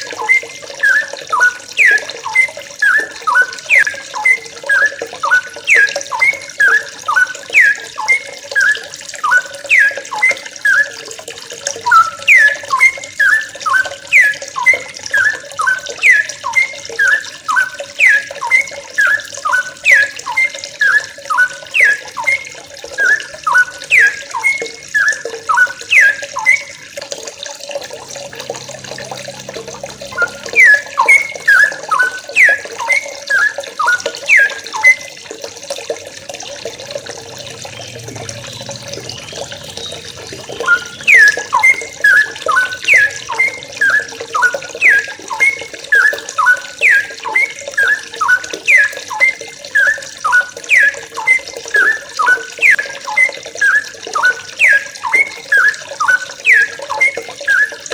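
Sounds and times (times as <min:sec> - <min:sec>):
bulbuls chirping: 0:28.0 - 0:35.0, 0:36.7 - 0:57.8.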